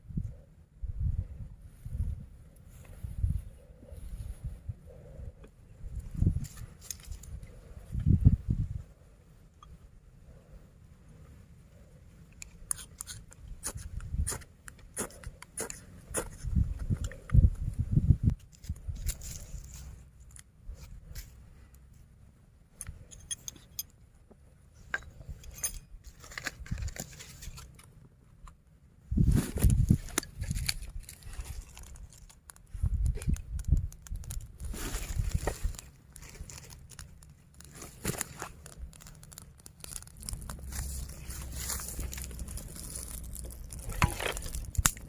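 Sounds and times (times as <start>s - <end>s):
handling clicks and scrapes: 6.0s - 8.1s, 12.2s - 22.0s, 22.8s - 28.6s, 29.2s - 45.0s.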